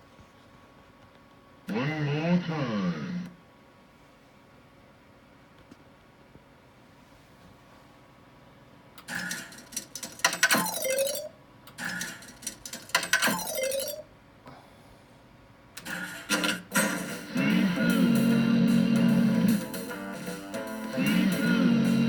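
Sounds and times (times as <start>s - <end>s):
electric guitar chords: 16.6s - 22.0s.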